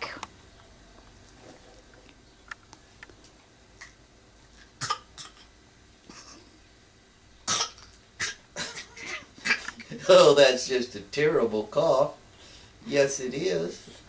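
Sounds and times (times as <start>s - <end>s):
harsh coughs: 4.8s - 5.5s, 7.5s - 9.8s.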